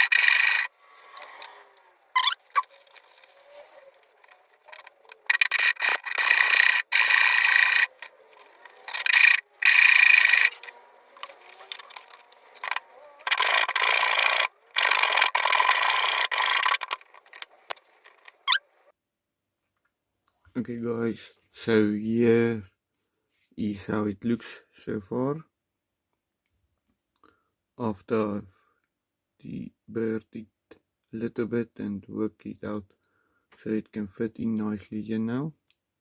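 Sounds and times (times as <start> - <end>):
tool grinding steel: 0.0 - 18.7.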